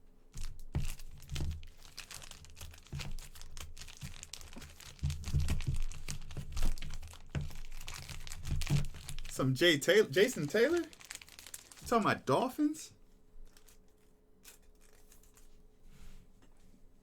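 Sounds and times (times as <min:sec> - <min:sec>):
foil wrappers crinkling: 0:00.4 - 0:12.8, 0:13.4 - 0:15.6.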